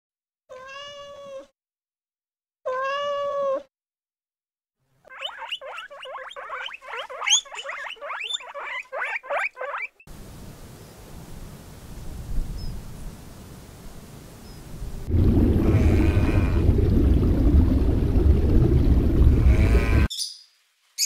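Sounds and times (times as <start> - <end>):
cat meowing: 0.5 - 1.5, 2.7 - 3.7
animal short rising chirps: 5.1 - 10.0.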